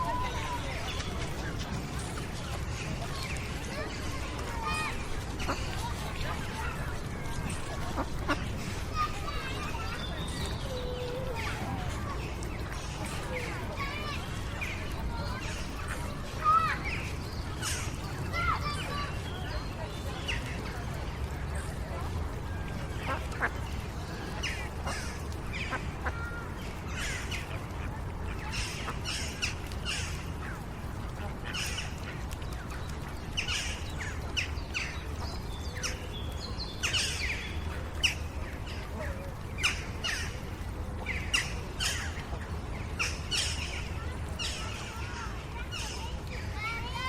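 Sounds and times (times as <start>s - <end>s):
distant children playing: 0.0s - 47.0s
birds chirping and calling: 23.0s - 46.4s.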